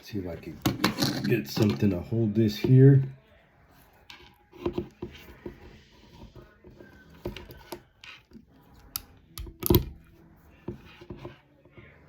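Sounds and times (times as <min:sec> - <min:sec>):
objects clattering on a workbench: 0:00.6 - 0:02.0.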